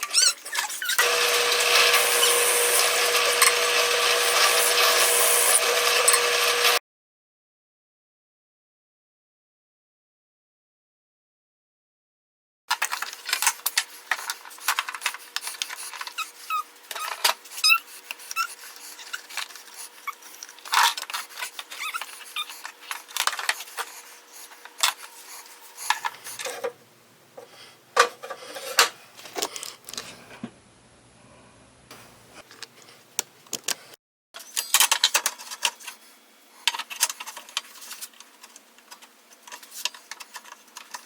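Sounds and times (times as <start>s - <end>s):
short squeaks: 0.0s - 1.0s, 16.1s - 19.4s, 21.7s - 22.7s.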